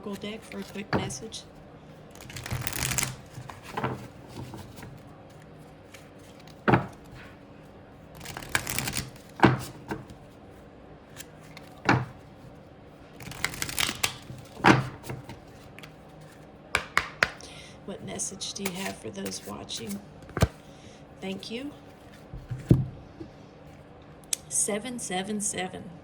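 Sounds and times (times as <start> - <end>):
cards being shuffled: 0.1 - 7.4, 8.2 - 10.4, 11.1 - 12.3, 13.2 - 17.5, 18.6 - 20.7.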